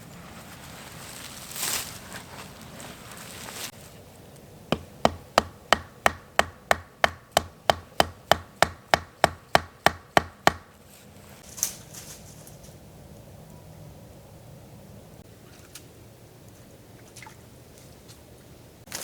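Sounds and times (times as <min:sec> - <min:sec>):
hammering blows: 0:04.7 - 0:10.8.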